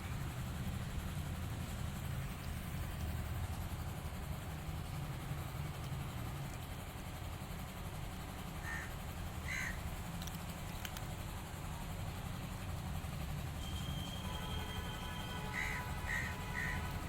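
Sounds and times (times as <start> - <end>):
faint clicks: 10.1 - 11.1.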